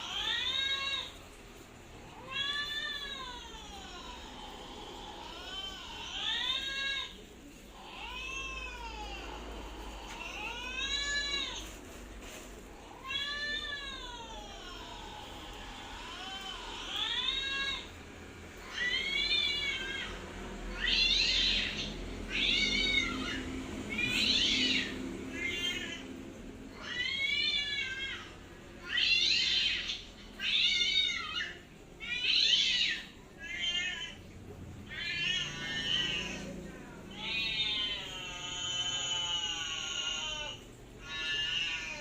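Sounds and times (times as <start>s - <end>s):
cat meowing: 18.6s - 26.0s, 26.8s - 34.2s.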